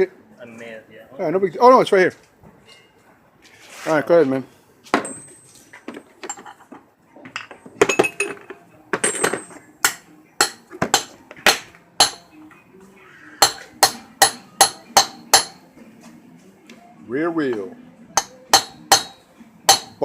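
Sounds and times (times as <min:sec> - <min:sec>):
hammer striking metal socket: 0:09.0 - 0:12.2, 0:13.4 - 0:15.6, 0:18.2 - 0:20.0.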